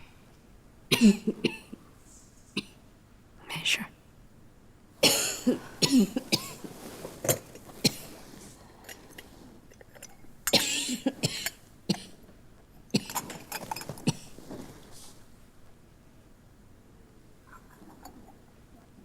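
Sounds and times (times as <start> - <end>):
man coughing harshly: 0.9 - 1.8, 5.0 - 6.6, 10.5 - 12.2.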